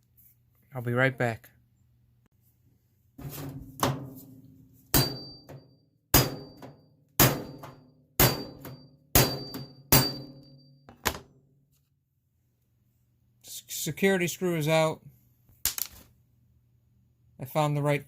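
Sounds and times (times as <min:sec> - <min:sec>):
hammer striking chisel on metal: 0:04.9 - 0:10.5.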